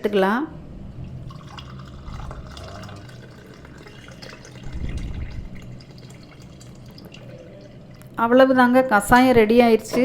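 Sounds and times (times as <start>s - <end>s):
liquid pouring into a cup: 1.0s - 8.2s
dull low rumble: 4.6s - 5.8s.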